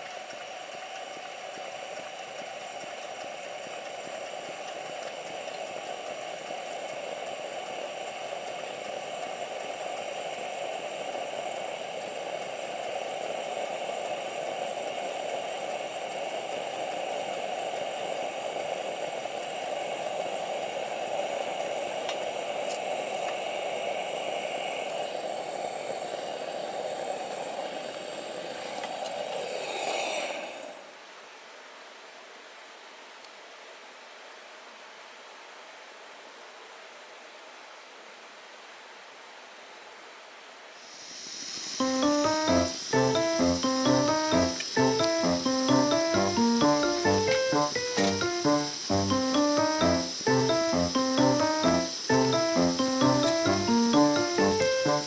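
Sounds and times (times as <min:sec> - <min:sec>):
steady rushing hiss: 0:00.0 - 0:30.9, 0:40.8 - 0:55.0.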